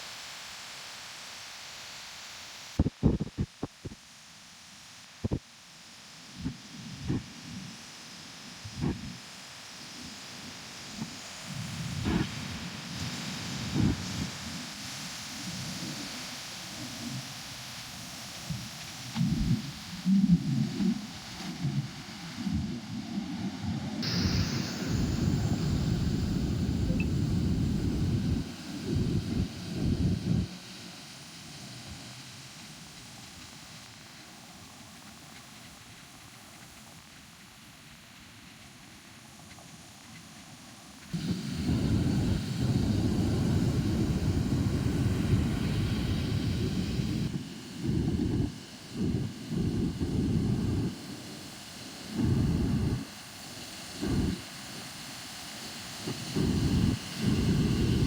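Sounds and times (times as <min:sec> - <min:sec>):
strong wind buffeting microphone: 0:24.0 - 0:30.5, 0:41.2 - 0:50.9, 0:56.4 - 0:58.0
wind buffeting microphone: 0:24.1 - 0:30.5.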